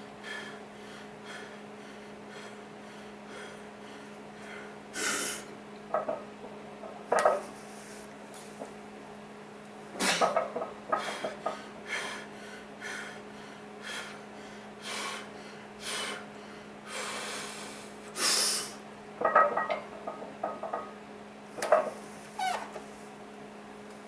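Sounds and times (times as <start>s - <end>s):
person breathing hard: 0.2s - 5.5s, 10.9s - 18.8s.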